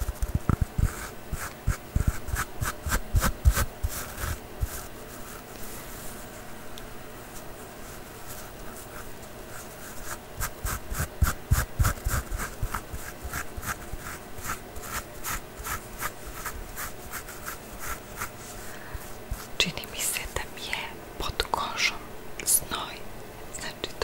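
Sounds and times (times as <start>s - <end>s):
rhythmic scratching on surface: 8.8s - 18.6s.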